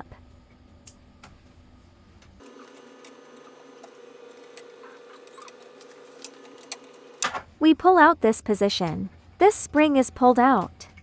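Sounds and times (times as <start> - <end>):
faint steady hum: 2.4 - 7.3.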